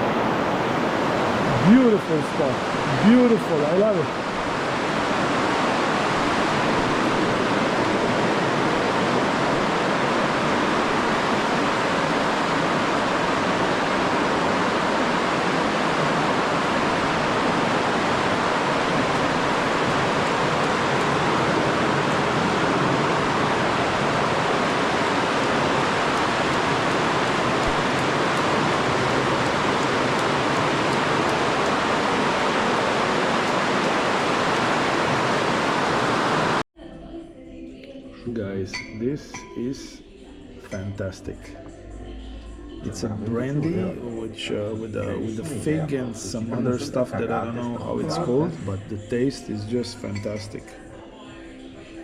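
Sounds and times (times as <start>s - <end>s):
rushing river water: 0.0s - 36.6s.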